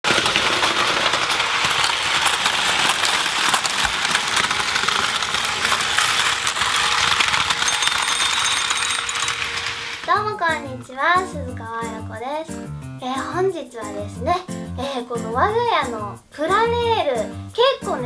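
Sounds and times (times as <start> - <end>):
toy trains rattling on plastic track: 0.0 - 10.9.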